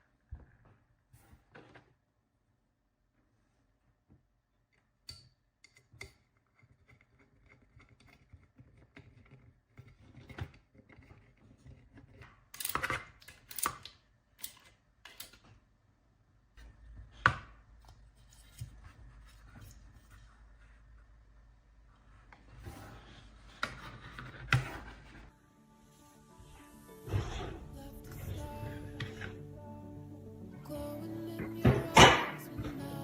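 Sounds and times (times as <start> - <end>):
clicks of small parts: 12.1 - 15.6.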